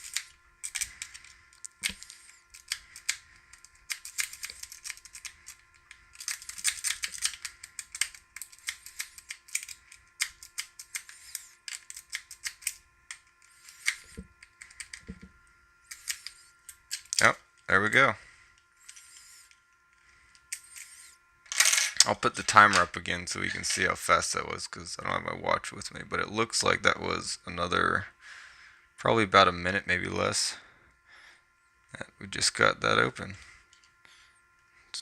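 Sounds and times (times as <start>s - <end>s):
lock pick clicking and scratching: 0.0s - 5.6s.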